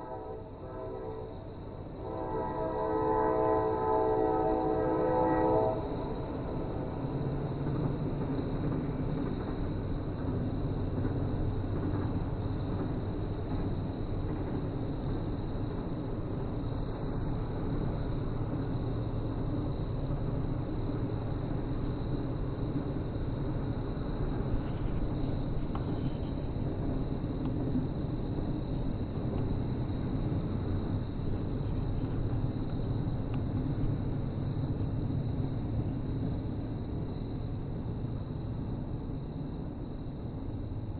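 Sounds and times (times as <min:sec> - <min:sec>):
train horn: 0:00.0 - 0:06.4
insect chirring: 0:16.7 - 0:17.4.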